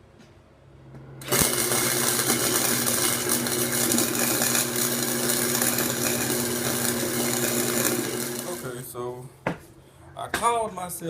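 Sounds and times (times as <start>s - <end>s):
low electrical hum: 0.0s - 11.0s
welding arc crackling: 1.2s - 8.8s.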